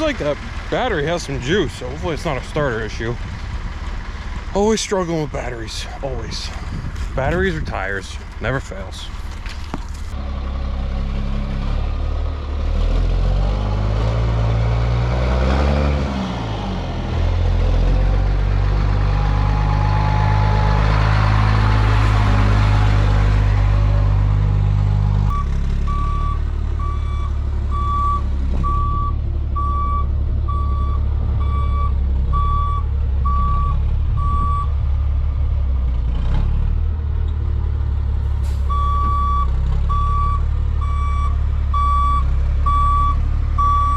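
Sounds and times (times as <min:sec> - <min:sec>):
truck engine revving: 0:00.0 - 0:43.9
backup alarm beeping: 0:25.3 - 0:34.7, 0:38.7 - 0:43.9.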